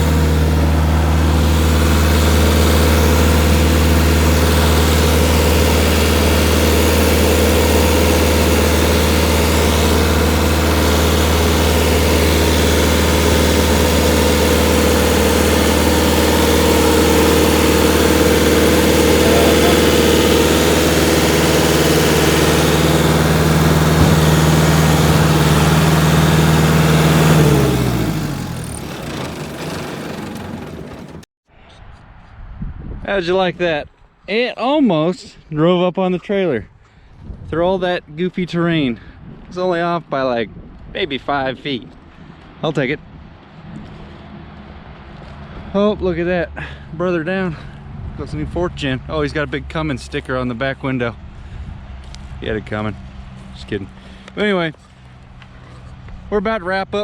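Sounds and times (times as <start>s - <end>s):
heavy machine engine running: 0.0s - 31.3s.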